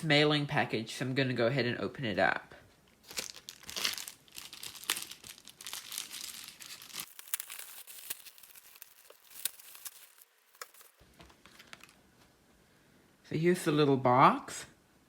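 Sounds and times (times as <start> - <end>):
packaging crinkling: 3.0 - 12.0
packaging tearing: 3.0 - 12.0.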